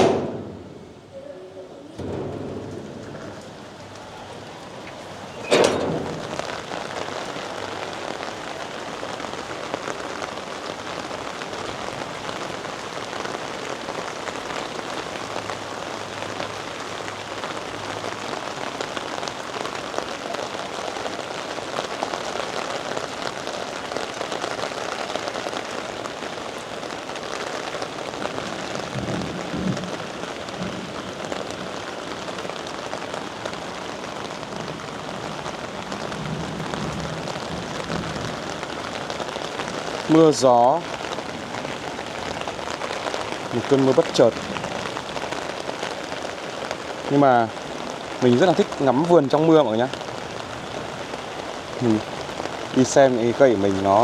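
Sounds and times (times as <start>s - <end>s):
sharp loud crack: 0.0s - 0.8s
steady rain hiss: 0.0s - 54.0s.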